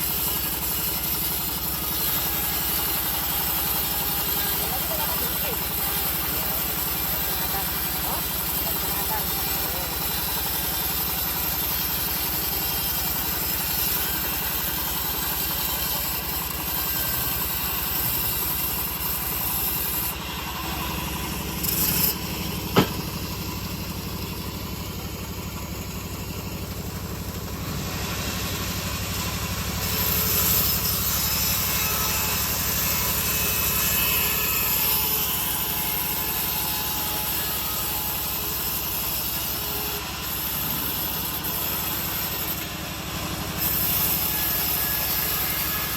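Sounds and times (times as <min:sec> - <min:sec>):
bandsaw mill cutting log: 0:00.0 - 0:45.9
sharp knock: 0:22.7 - 0:23.1.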